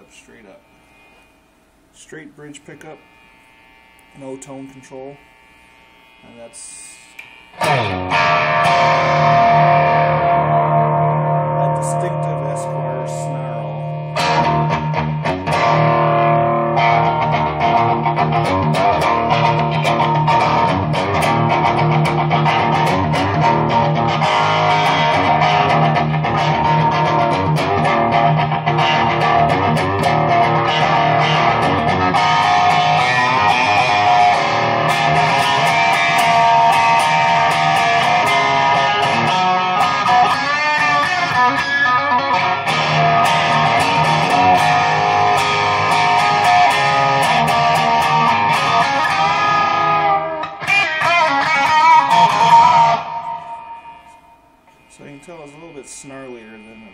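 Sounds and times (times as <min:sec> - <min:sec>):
electric guitar notes and chords: 0:02.7 - 0:55.8.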